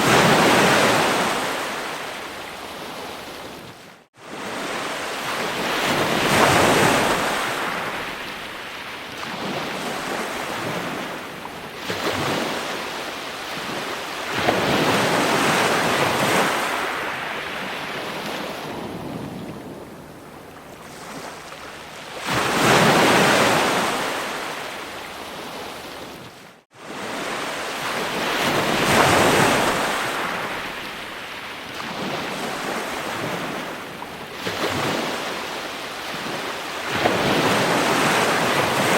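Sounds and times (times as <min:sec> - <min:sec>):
ocean waves breaking: 0:00.0 - 0:38.9.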